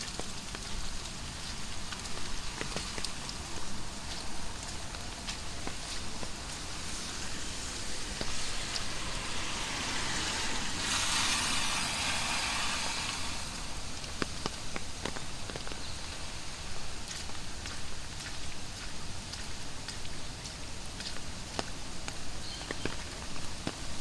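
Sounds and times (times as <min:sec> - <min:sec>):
sharp drip ticks: 0:00.0 - 0:06.6
heavy rain falling: 0:00.0 - 0:24.0.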